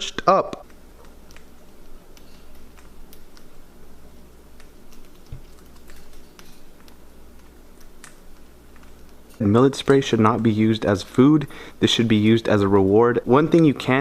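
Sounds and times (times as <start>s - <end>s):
steady low hum: 0.0s - 14.0s
light clicks and taps: 4.6s - 10.5s.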